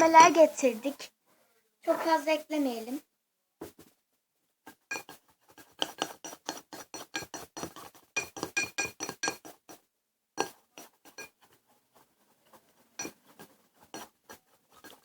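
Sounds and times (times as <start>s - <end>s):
spoon clinking against bowl: 4.9s - 5.2s, 7.0s - 9.5s.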